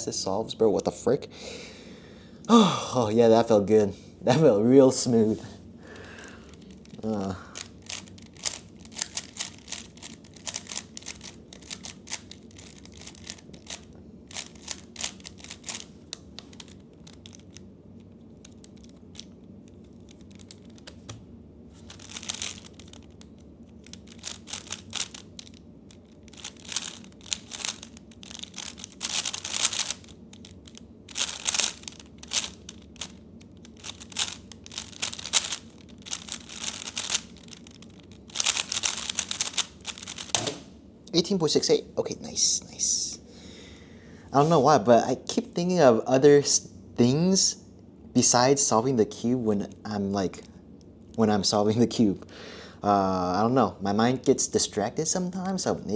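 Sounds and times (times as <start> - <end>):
plastic puzzle cube clicking: 7.6 - 17.6, 18.4 - 21.2, 21.9 - 40.6.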